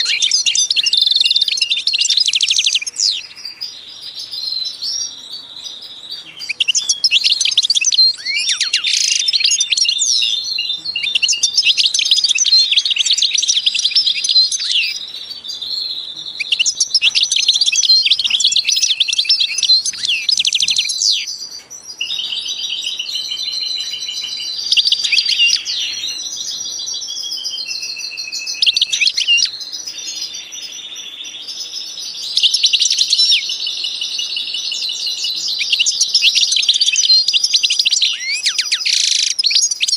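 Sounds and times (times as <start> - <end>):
birds singing and chirping: 0.0 - 39.9.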